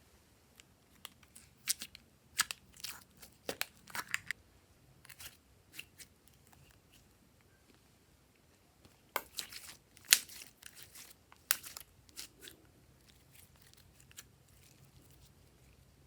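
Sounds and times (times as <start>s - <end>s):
slime crackling and popping: 9.2s - 12.5s.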